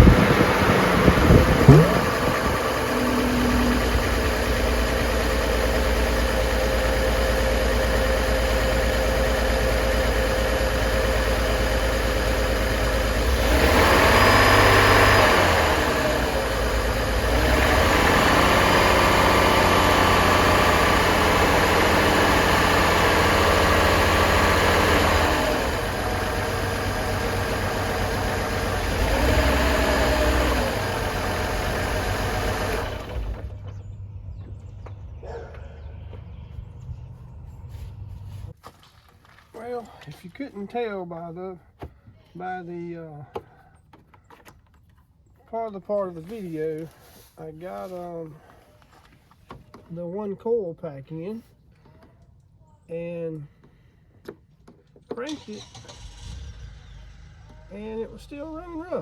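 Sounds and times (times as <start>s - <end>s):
rough car engine idling and revving: 0.0s - 38.6s, 55.2s - 59.0s.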